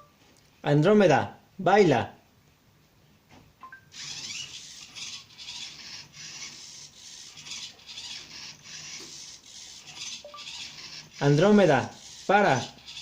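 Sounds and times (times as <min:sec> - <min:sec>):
servo motors whirring and grinding: 0:03.9 - 0:13.0.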